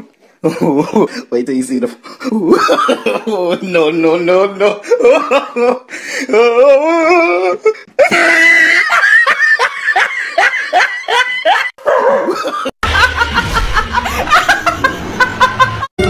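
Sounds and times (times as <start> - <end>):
person laughing hard: 2.3 - 3.6, 4.7 - 15.9.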